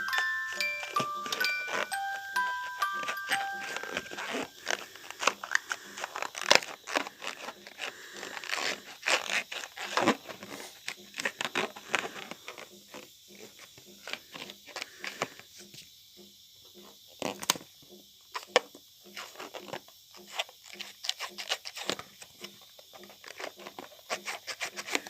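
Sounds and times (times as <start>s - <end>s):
wrapping paper crinkling and tearing: 0.0s - 12.7s, 20.6s - 22.1s.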